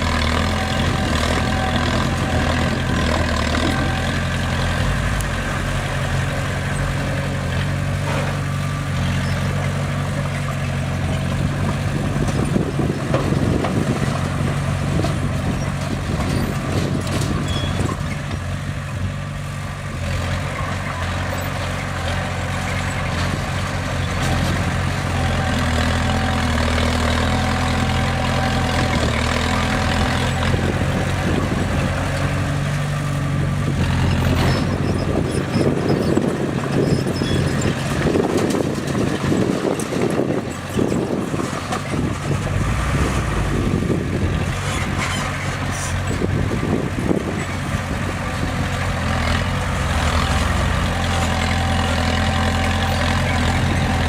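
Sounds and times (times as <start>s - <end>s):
bulldozer diesel engine running: 0.0s - 54.0s.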